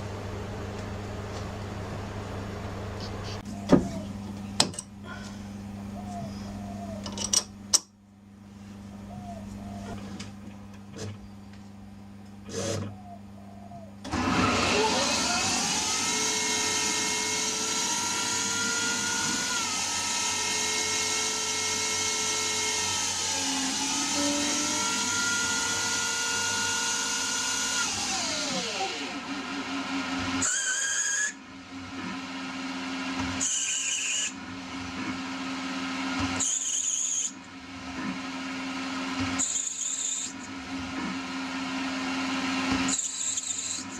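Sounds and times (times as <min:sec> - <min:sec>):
lathe machine whine: 0:14.1 - 0:31.4.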